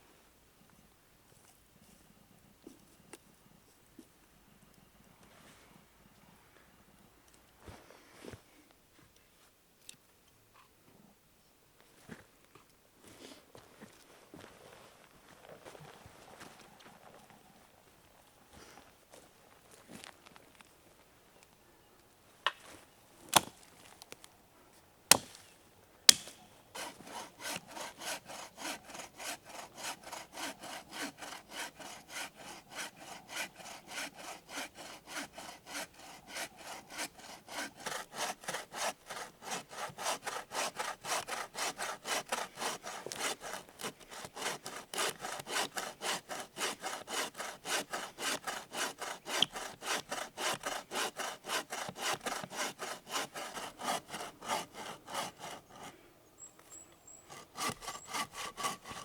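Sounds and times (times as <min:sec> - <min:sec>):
hand saw cutting wood: 0:25.1 - 0:25.4, 0:26.1 - 0:56.0, 0:57.1 - 0:59.0.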